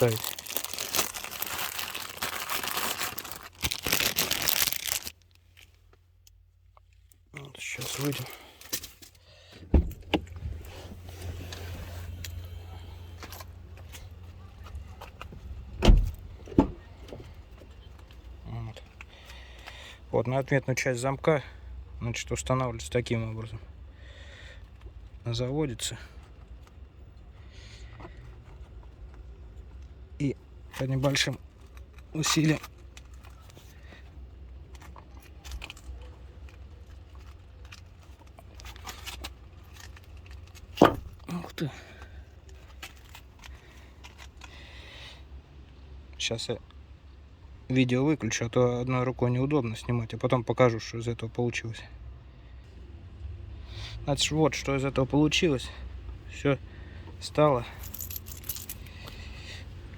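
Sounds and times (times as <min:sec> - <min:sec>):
crunchy clicks and scrapes: 0:00.0 - 0:06.0, 0:34.6 - 0:41.4, 0:42.4 - 0:44.6
car door latch clicking: 0:15.8 - 0:16.8.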